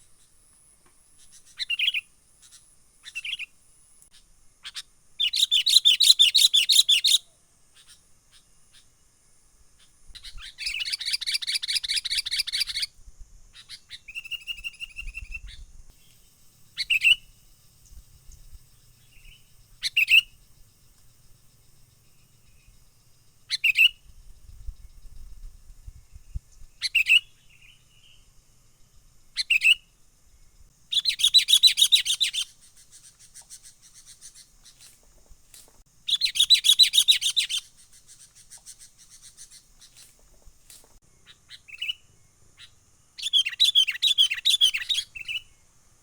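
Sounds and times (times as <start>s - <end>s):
bird chirping and chattering: 1.2s - 3.5s, 4.6s - 7.2s, 10.2s - 12.9s, 13.6s - 20.4s, 30.9s - 35.3s, 36.1s - 42.0s
faint high whine: 12.9s - 30.9s.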